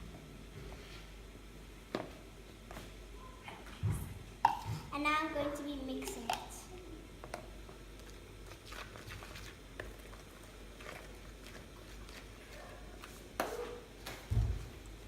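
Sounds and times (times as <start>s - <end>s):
batter stirred in mixing bowl: 4.4s - 5.0s, 6.0s - 15.0s.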